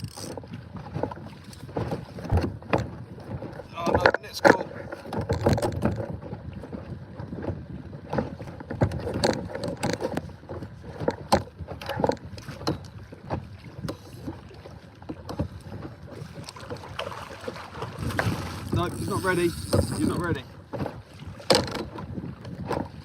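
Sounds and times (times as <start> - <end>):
gear clicking and knocking: 18.1 - 20.2.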